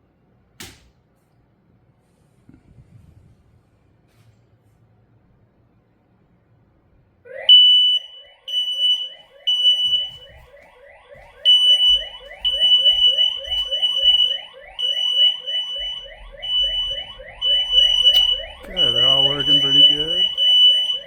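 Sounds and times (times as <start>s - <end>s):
shrill high-pitched alarm beeps: 7.4s - 21.0s.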